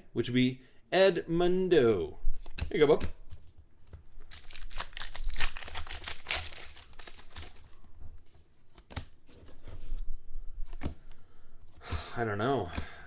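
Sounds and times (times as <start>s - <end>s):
foil wrapper crinkling and tearing: 4.2s - 7.6s.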